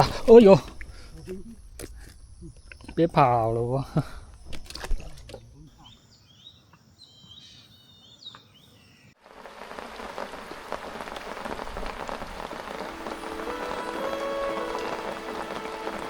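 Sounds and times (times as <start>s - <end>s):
dense rain patter: 0.0s - 1.1s, 9.2s - 16.0s
faint bird chirps: 5.4s - 9.2s
soft music tones: 12.8s - 16.0s.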